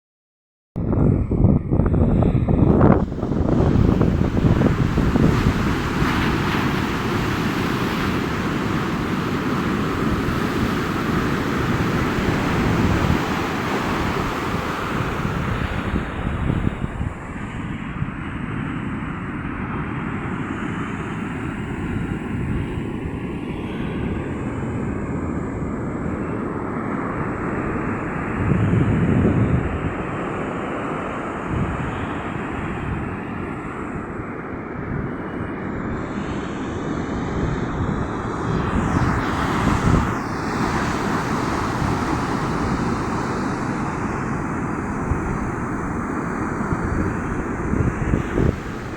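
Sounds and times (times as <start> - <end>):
wind on microphone: 0.8 - 48.9
sea waves washing ashore: 2.7 - 48.9.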